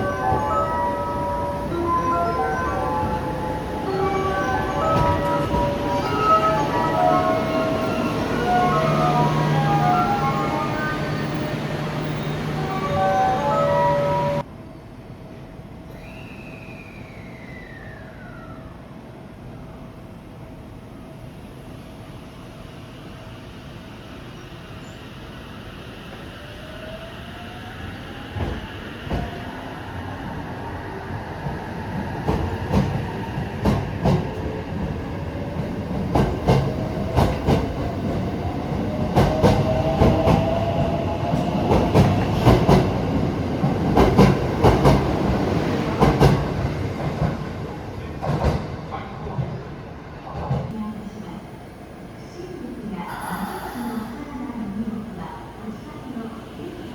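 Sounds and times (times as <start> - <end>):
train wheels clattering: 32.2 - 49.7.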